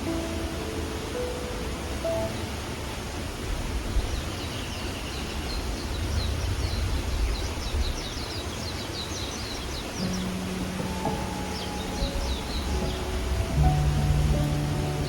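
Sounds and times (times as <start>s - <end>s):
stream water rushing: 0.0s - 15.0s
songbird twittering trill: 4.1s - 15.0s.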